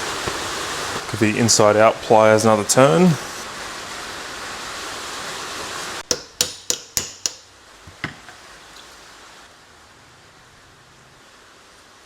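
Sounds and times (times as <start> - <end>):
metal tapping on metal: 6.0 - 8.9.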